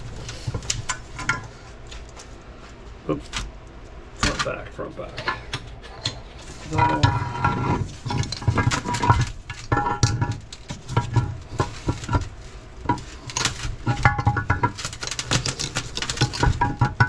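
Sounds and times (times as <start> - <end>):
metal gears clinking and clattering: 4.2 - 17.0.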